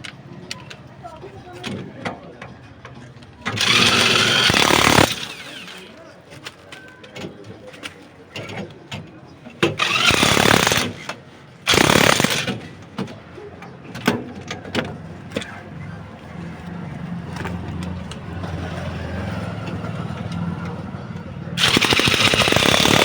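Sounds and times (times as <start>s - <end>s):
harsh mechanical noise bursts: 3.6s - 5.8s, 9.8s - 11.0s, 11.7s - 12.6s, 21.6s - 23.0s.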